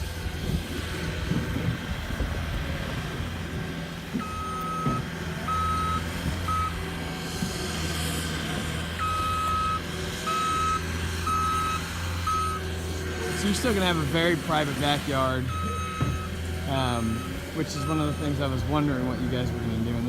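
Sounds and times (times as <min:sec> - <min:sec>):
vehicle engine running: 0:00.0 - 0:20.0
reverse alarm beeping: 0:04.2 - 0:06.8, 0:09.0 - 0:12.7, 0:15.4 - 0:18.5.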